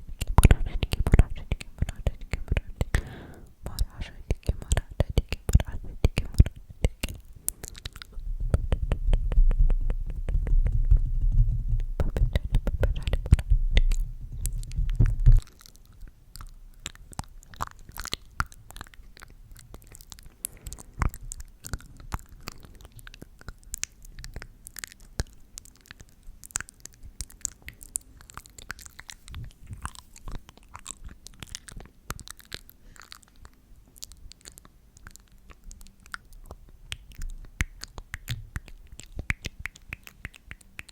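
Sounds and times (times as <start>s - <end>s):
wet mouth clicks and smacks: 0.0s - 40.9s
low rumble: 8.2s - 15.4s.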